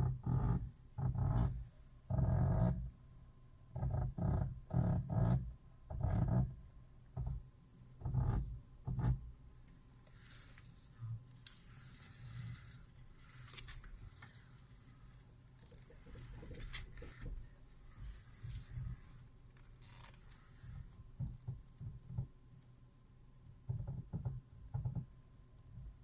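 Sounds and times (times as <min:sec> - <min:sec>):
faint hissing rustle: 0:09.7 - 0:21.0.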